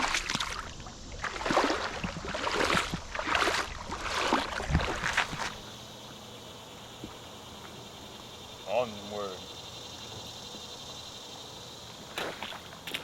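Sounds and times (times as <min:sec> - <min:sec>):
legs wading through water: 0:00.0 - 0:06.2, 0:12.1 - 0:13.0.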